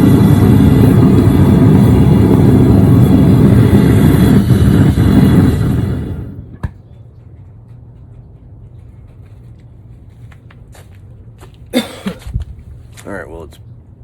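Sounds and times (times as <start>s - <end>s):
forge burner roaring: 0.0s - 7.0s.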